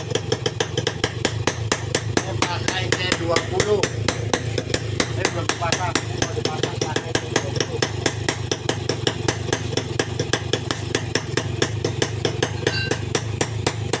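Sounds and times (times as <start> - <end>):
small engine idling: 0.0 - 14.0
sharp even ticking: 1.3 - 9.6, 12.1 - 13.4
brief pitched tone: 12.6 - 13.1.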